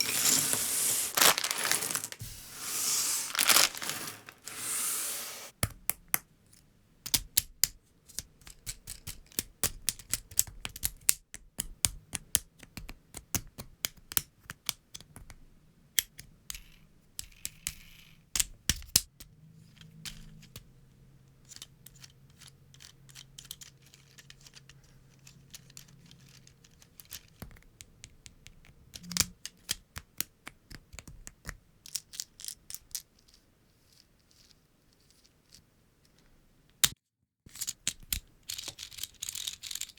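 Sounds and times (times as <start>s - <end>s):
loose plastic pieces rattling: 0.0s - 2.2s, 2.8s - 4.6s.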